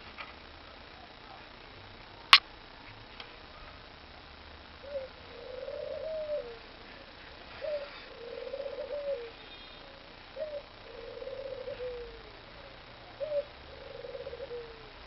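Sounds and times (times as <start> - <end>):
dove cooing: 4.8 - 15.0.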